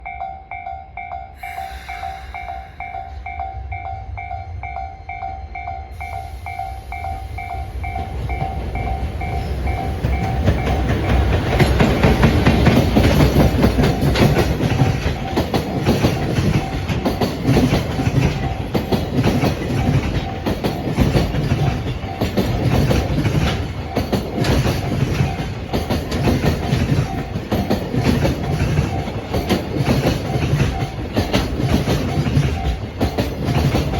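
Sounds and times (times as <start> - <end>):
electric train passing: 0.0 - 33.9
level crossing warning bell: 0.0 - 33.9
train wheels clattering over rail joints: 8.0 - 33.9.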